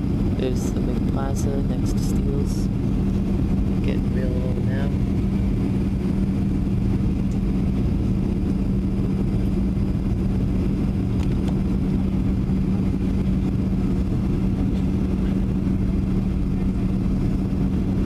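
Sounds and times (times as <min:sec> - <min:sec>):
constant low hum: 0:00.0 - 0:18.0
jet engines droning: 0:00.0 - 0:18.0.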